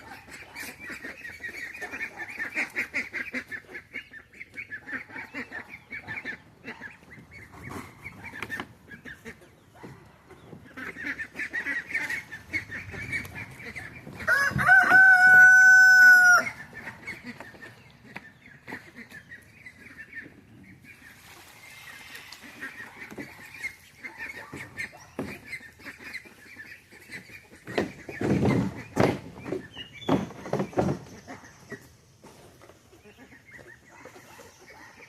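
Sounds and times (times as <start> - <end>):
chickens clucking: 0.0 - 35.0
rooster crowing: 14.3 - 16.6.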